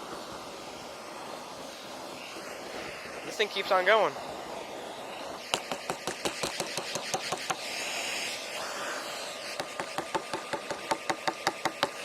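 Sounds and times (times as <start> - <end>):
shop vacuum suction whooshing: 0.0 - 12.0.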